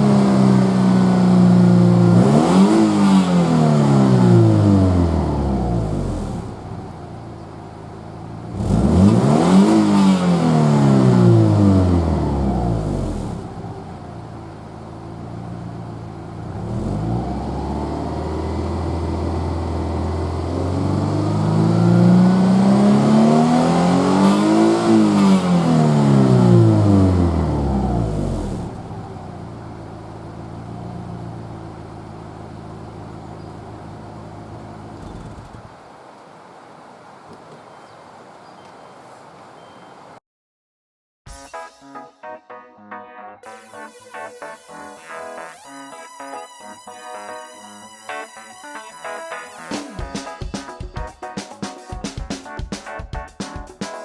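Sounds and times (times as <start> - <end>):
car engine revving: 0.0 - 38.5.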